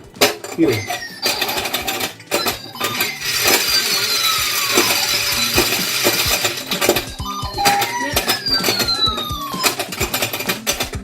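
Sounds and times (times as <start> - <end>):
toy rattling: 0.0 - 11.0
electronic falling tones: 2.3 - 10.0
clicks and knocks of flippers: 4.6 - 11.0.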